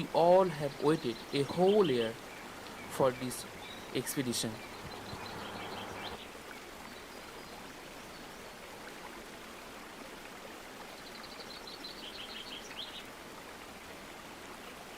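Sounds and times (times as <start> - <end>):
river and waterfalls rushing: 0.0 - 6.9
small bird chirping: 0.7 - 6.2.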